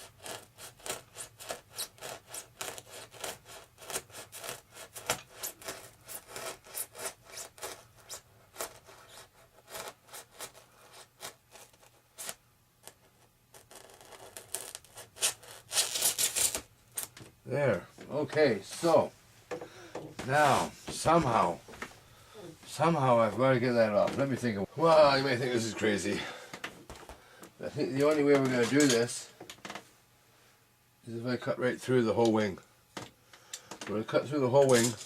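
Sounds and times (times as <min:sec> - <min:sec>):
knife sawing through foam: 0:00.0 - 0:12.4.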